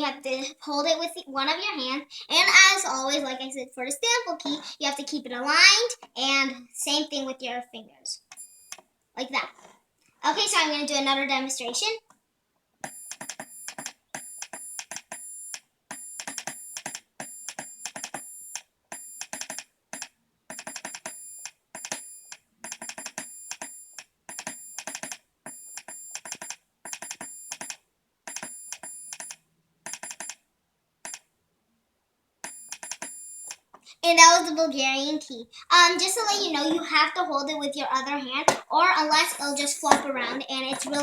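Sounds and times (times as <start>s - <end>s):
morse code sidetone beeping: 12.8s - 30.4s, 32.4s - 33.6s
telegraph key clicking: 12.8s - 30.4s, 32.4s - 33.7s.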